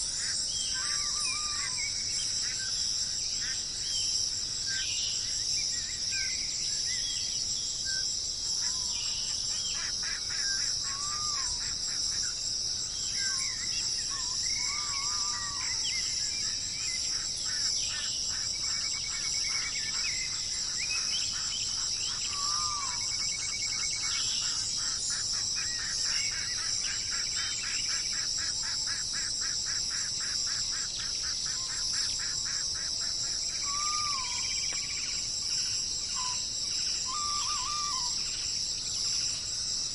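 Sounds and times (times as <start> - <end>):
insects chorus: 0.0 - 39.9
birds calling: 36.1 - 39.4.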